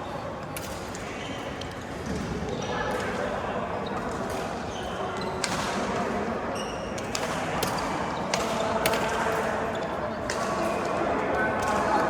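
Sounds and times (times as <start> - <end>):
shoe squeak on court: 6.5 - 7.0.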